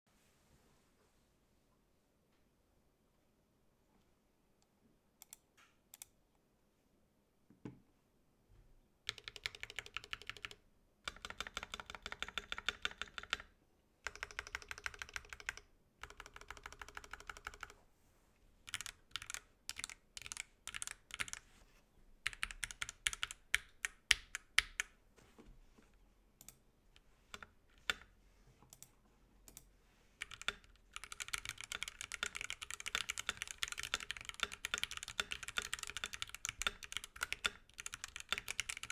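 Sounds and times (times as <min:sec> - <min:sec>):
mechanical keyboard typing: 0:09.1 - 0:17.8, 0:18.7 - 0:21.4, 0:22.2 - 0:25.0, 0:30.2 - 0:38.9.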